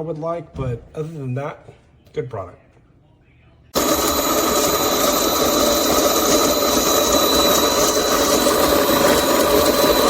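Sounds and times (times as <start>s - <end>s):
beans grinding with coarse rattle: 3.8s - 10.0s
coffee grinder motor whining: 3.8s - 10.0s.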